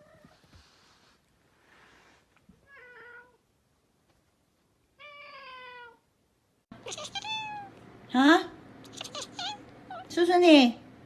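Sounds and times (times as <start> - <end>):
cat meowing: 5.0 - 6.0, 6.8 - 7.7, 8.9 - 10.1.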